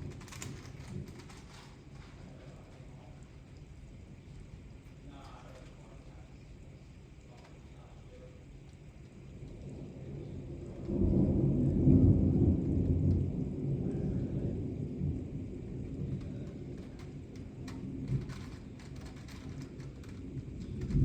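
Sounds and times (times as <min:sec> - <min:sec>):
thunder rumbling: 0:00.0 - 0:21.0.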